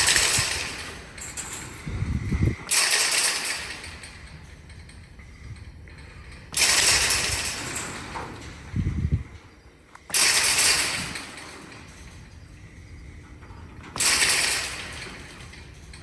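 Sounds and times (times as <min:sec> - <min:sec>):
metal gate crashing and rattling: 0:00.0 - 0:01.8, 0:02.6 - 0:05.1, 0:06.3 - 0:08.8, 0:10.1 - 0:16.0.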